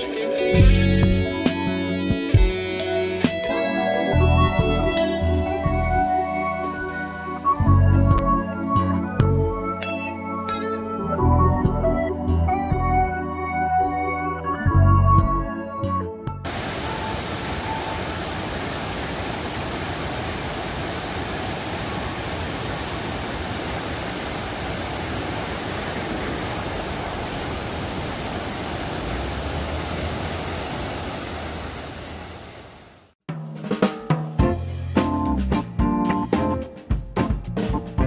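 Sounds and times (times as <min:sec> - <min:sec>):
music: 0:00.0 - 0:18.0, 0:33.3 - 0:38.0
waterfall rushing: 0:16.5 - 0:33.1.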